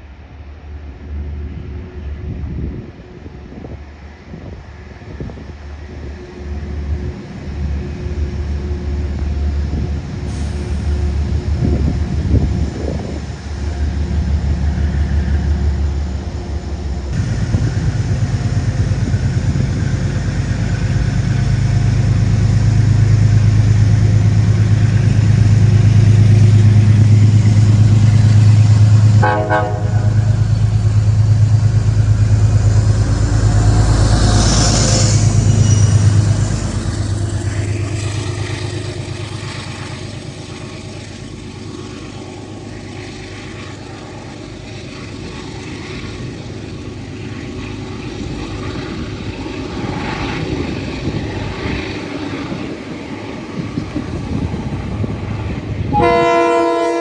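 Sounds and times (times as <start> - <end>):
train passing: 0.0 - 57.0
train horn blast: 28.8 - 30.6, 55.9 - 57.0.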